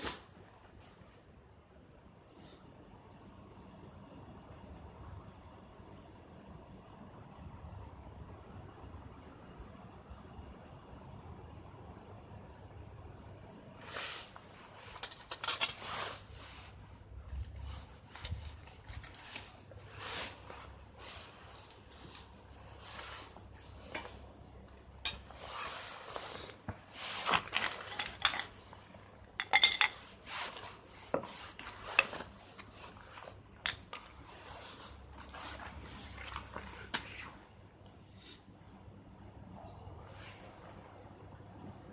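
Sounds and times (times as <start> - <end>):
metal cookware clinking and scraping: 27.6 - 28.6, 29.4 - 30.0.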